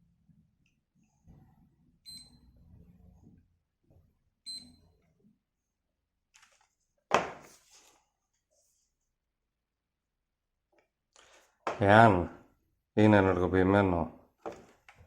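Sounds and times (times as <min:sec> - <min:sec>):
alarm clock electronic beeps: 0:02.0 - 0:02.5, 0:04.4 - 0:04.8.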